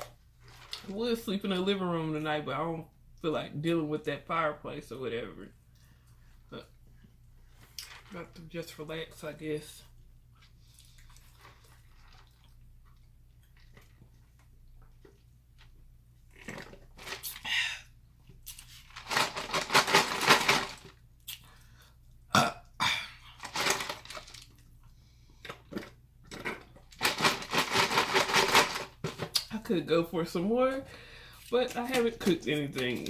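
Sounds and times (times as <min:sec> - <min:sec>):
person burping loudly: 0:22.3 - 0:23.4.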